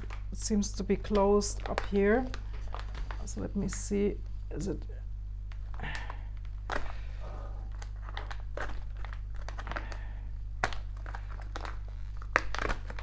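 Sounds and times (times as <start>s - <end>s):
plastic bag crinkling: 0.0s - 3.9s, 5.5s - 13.0s.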